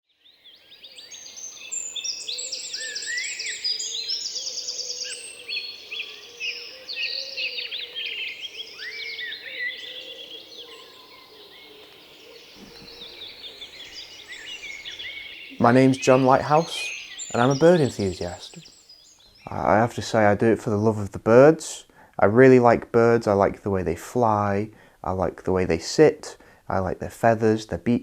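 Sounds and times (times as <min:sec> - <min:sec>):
songbirds singing: 0:00.1 - 0:20.9.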